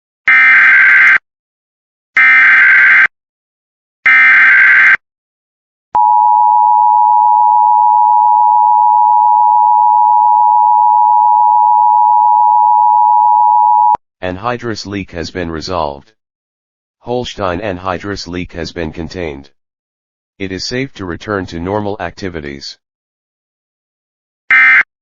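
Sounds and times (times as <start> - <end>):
loud steady attention tone: 6.0 - 14.0.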